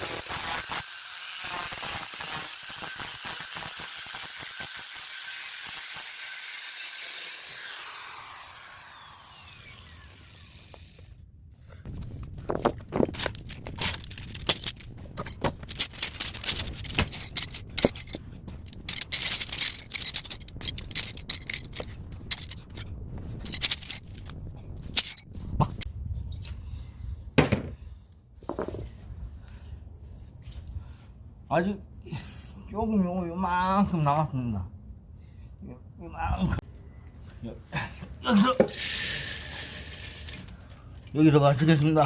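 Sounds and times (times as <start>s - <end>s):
power tool whining: 0.0s - 11.2s
metal scrap clinking and scraping: 13.0s - 25.2s, 38.6s - 42.0s.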